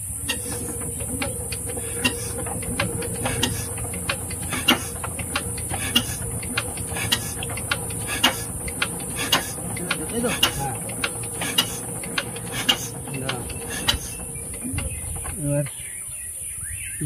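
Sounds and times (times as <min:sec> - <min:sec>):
low hum: 0:00.0 - 0:16.0
diesel engine clicking: 0:00.0 - 0:16.9
man talking: 0:09.6 - 0:10.9, 0:12.8 - 0:14.1, 0:15.3 - 0:15.7.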